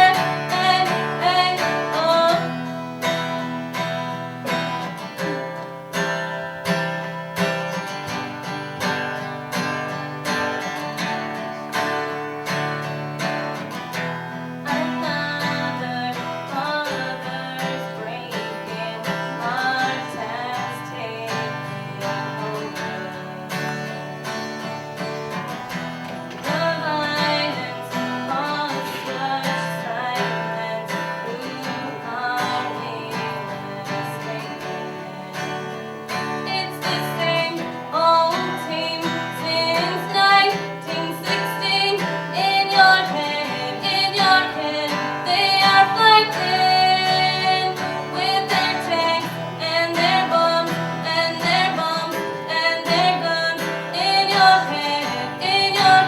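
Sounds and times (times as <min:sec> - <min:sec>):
person singing: 0:00.0 - 0:03.6, 0:36.4 - 0:56.0
strummed acoustic guitar: 0:00.0 - 0:56.0.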